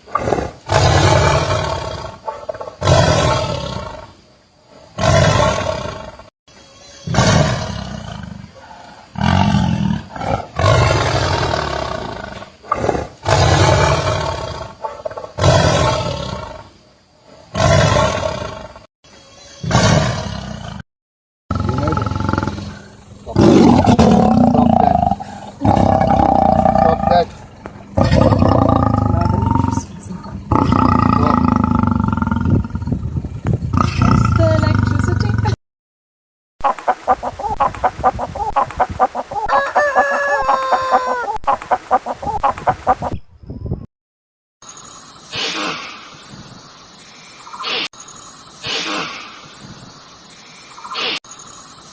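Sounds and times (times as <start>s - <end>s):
big cat roaring: 0.0s - 2.2s, 7.1s - 14.8s, 21.5s - 33.1s
chickens clucking: 36.6s - 43.2s
rooster crowing: 39.4s - 41.4s.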